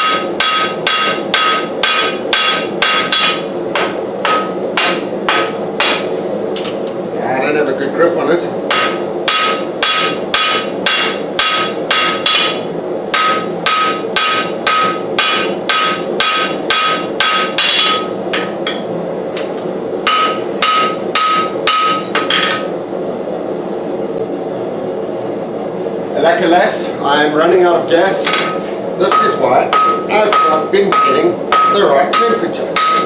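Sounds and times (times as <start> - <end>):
hammer striking steel on anvil: 0.0 - 6.8, 8.7 - 18.9, 20.0 - 22.7, 28.2 - 33.0.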